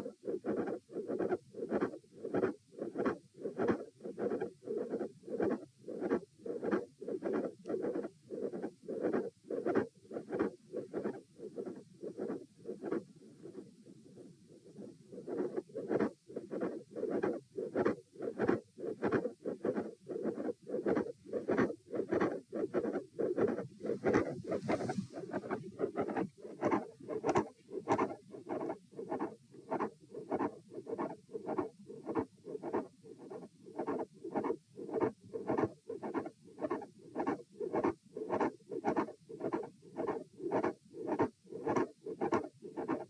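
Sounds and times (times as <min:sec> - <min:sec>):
heartbeat through a stethoscope: 0:14.6 - 0:43.0
brief scratchy sounds: 0:15.3 - 0:32.9.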